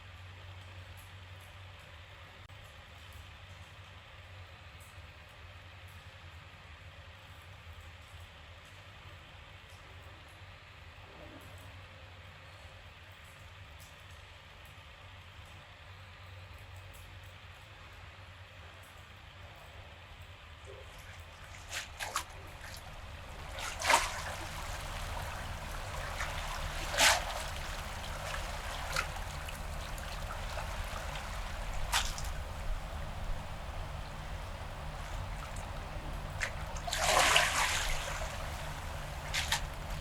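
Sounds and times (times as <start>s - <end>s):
short water splashes: 20.7s - 40.0s
water trickling: 20.9s - 40.0s.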